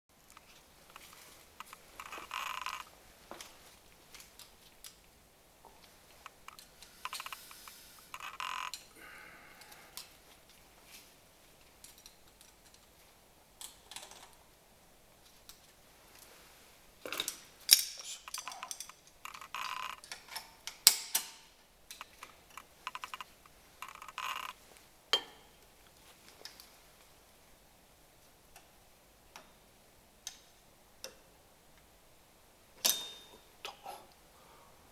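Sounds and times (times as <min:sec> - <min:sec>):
metal tools clicking and clinking: 0:11.8 - 0:12.9, 0:17.1 - 0:24.5, 0:32.8 - 0:33.5.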